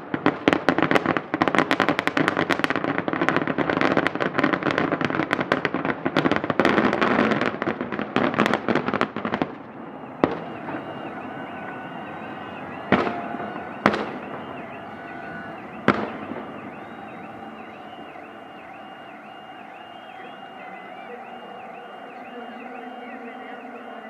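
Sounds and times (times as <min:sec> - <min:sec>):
fireworks bangs and crackling: 0:00.0 - 0:24.0
loud firework bang: 0:06.6 - 0:20.4.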